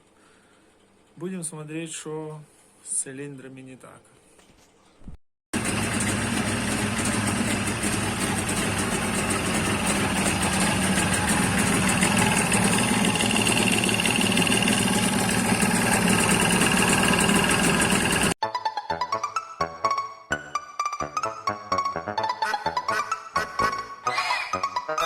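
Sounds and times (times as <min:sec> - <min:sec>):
two-stroke engine running: 0:05.5 - 0:18.4.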